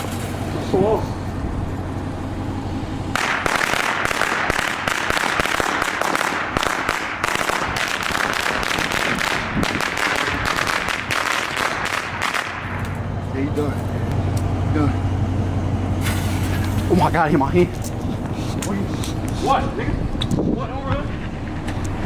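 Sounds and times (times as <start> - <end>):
firecrackers popping: 3.1 - 13.2.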